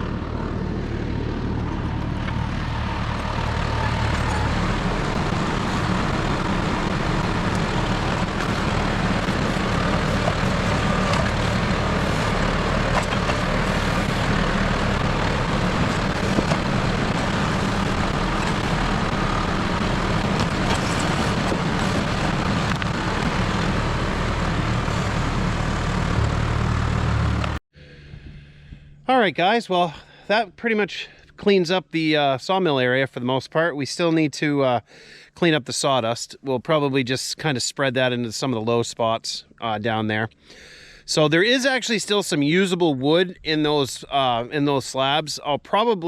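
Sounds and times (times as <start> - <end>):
tractor diesel engine running: 0.0 - 27.6.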